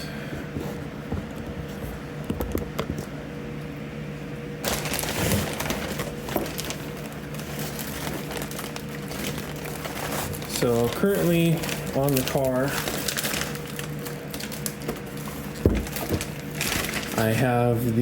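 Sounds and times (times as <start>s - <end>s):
steady background hum: 0.0s - 18.0s
packing materials rustling: 4.6s - 18.0s.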